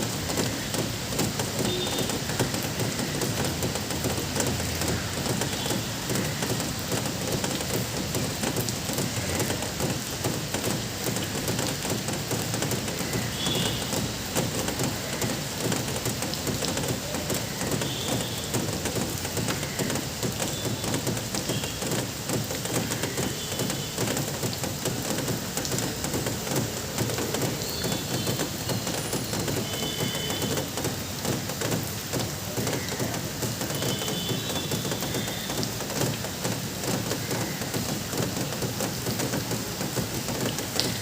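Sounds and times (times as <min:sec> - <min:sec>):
steady rain falling: 0:00.0 - 0:41.0.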